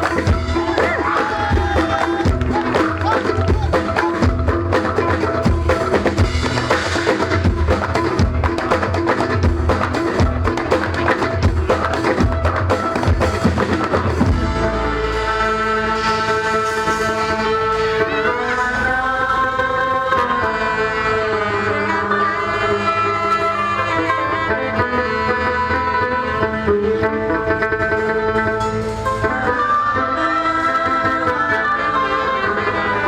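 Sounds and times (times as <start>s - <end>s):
fast drum strokes: 0.0s - 17.8s
ensemble folk music: 0.0s - 33.0s.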